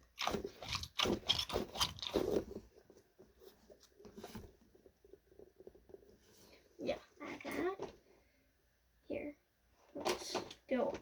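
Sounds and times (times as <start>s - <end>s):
fidget toy crunching and scraping: 0.0s - 2.6s.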